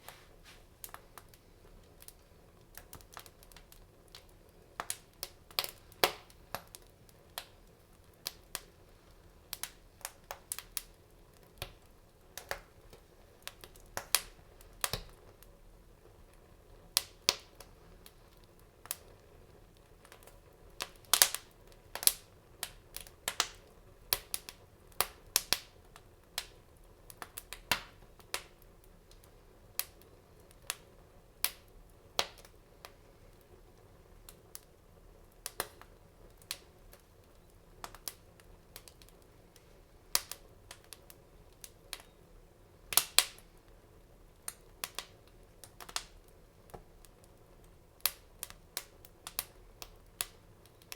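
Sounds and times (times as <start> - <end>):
fire crackling and popping: 0.0 - 50.9.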